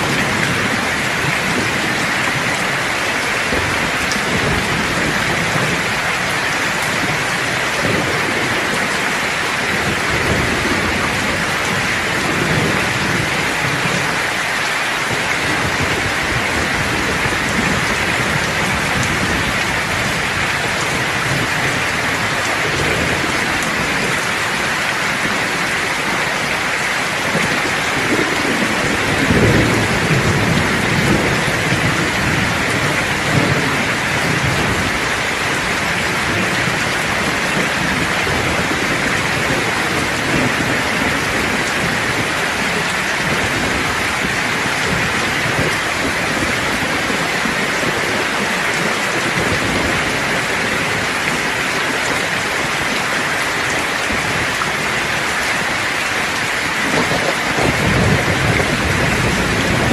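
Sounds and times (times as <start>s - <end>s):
heavy rainfall: 0.0s - 59.9s
rolling thunder: 15.0s - 52.8s, 53.5s - 59.9s.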